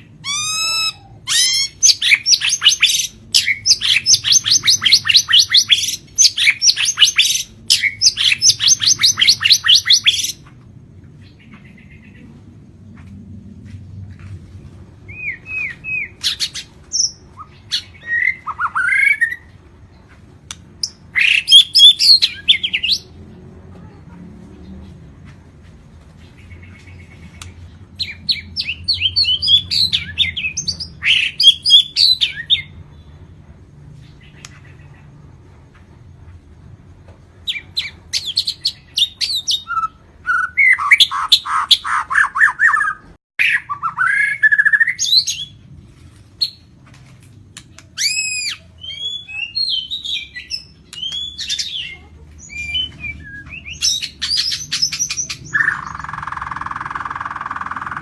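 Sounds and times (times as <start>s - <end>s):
songbird whistles and trills: 0.2s - 10.5s, 15.0s - 19.6s, 20.5s - 23.1s, 26.4s - 32.8s, 47.8s - 58.0s
steady low hum: 10.3s - 21.4s.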